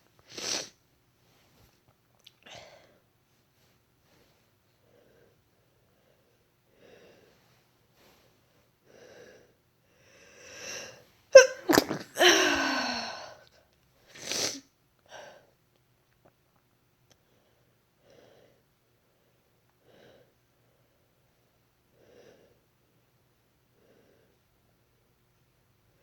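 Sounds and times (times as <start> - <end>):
woman sneezing: 11.4 - 13.2.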